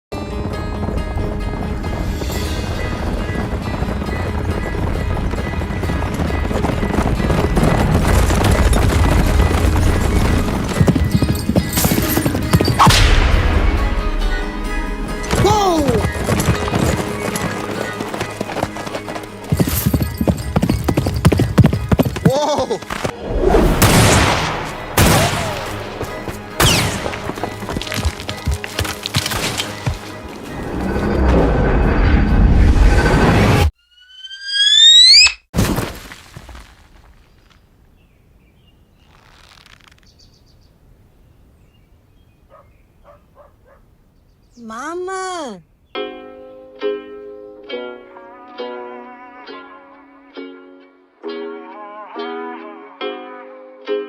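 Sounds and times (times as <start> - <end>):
background music: 0.1 - 32.6, 44.6 - 54.0
horse hooves clip-clopping: 0.2 - 13.0, 15.1 - 23.2, 24.7 - 30.9
faint bird chirps: 33.8 - 35.4.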